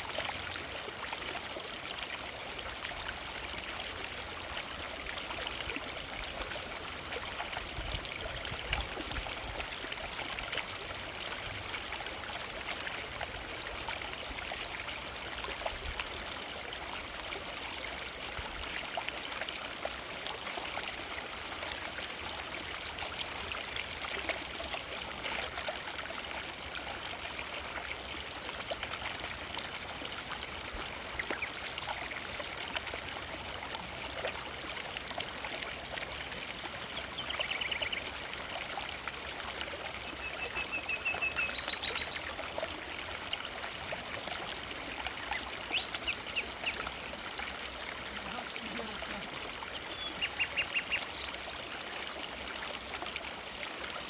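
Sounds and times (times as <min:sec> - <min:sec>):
river flowing: 0:09.0 - 0:54.0
bird calls and trills: 0:31.0 - 0:32.6, 0:36.8 - 0:38.6, 0:40.0 - 0:42.5, 0:45.3 - 0:47.0, 0:49.7 - 0:51.4.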